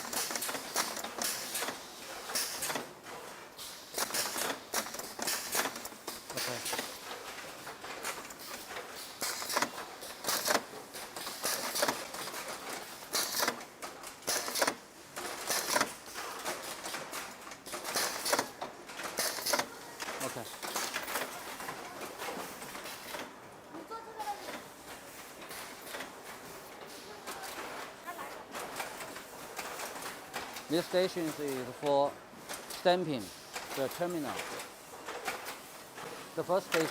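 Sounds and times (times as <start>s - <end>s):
factory background noise: 0.0s - 36.9s
small parts clicking and clattering: 3.6s - 23.3s.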